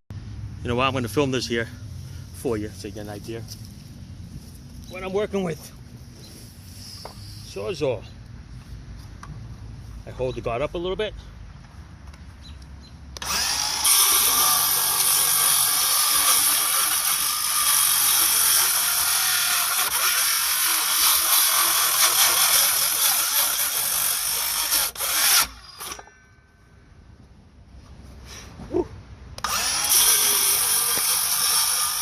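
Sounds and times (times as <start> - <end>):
power saw cutting wood: 13.2 - 26.1, 29.4 - 32.0.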